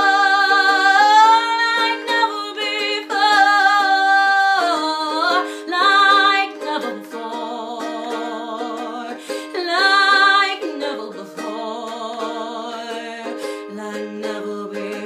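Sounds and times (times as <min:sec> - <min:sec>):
plucked string accompaniment: 0:00.0 - 0:15.0.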